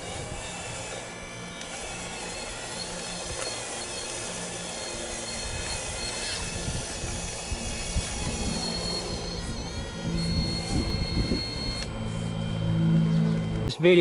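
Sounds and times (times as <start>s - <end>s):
excavator diesel engine: 0.0s - 14.0s
hydraulic hiss and whine: 0.0s - 14.0s.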